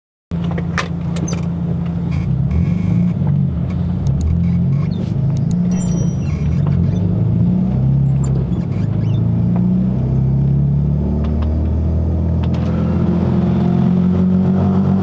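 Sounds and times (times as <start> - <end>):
car engine running low hum: 0.4 - 14.1
short high squeak: 4.4 - 9.5.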